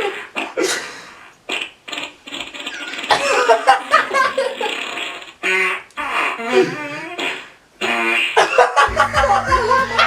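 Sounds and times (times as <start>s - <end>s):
fart sound effect: 1.2s - 8.5s.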